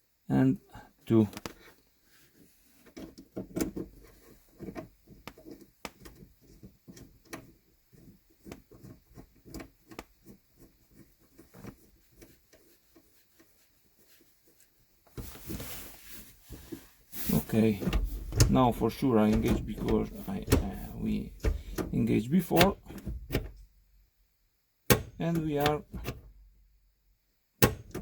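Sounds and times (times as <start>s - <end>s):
rubbing scraping noise: 8.0s - 23.1s.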